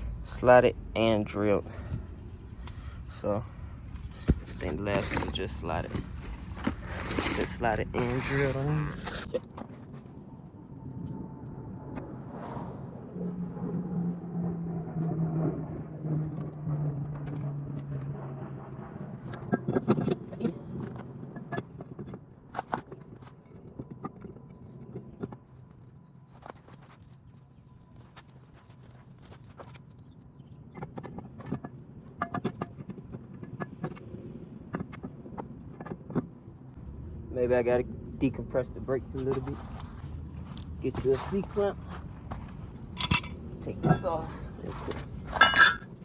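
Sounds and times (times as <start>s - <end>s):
vehicle engine droning: 0.0s - 9.4s, 10.0s - 22.3s
metal brake parts clicking: 43.0s - 44.2s.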